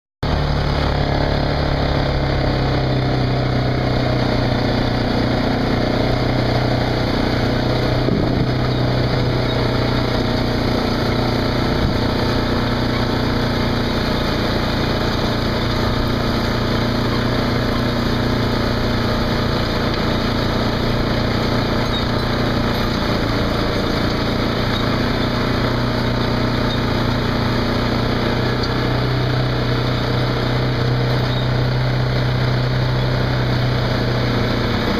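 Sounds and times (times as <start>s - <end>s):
tractor diesel engine running: 0.2s - 34.9s.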